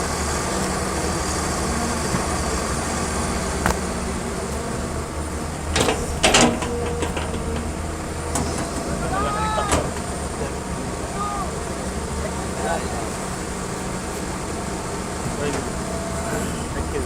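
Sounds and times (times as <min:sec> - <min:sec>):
diesel engine running: 0:00.0 - 0:17.0
loud metal clanks: 0:05.6 - 0:09.0.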